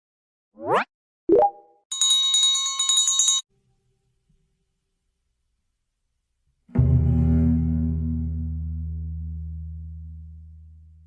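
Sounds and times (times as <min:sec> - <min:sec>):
cartoon rising bloop: 0:00.6 - 0:01.7
cartoon plop with tone: 0:00.7 - 0:01.8
bell-like ringing: 0:01.9 - 0:03.5.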